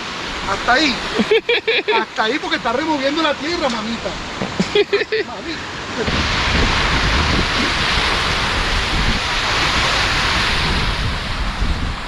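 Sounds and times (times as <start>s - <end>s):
sea surf rushing against shore: 0.0s - 12.0s
wind rumbling on microphone: 2.4s - 12.0s.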